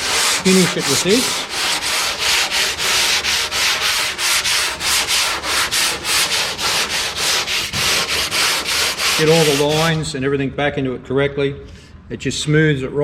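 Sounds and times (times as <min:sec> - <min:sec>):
sanding strokes on bare steel: 0:00.0 - 0:10.1.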